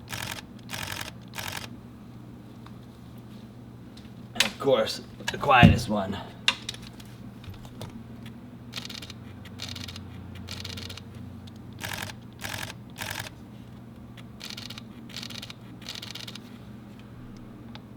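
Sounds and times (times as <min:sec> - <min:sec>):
camera shutter clicks: 0:00.1 - 0:01.7, 0:08.7 - 0:13.3, 0:14.4 - 0:16.5.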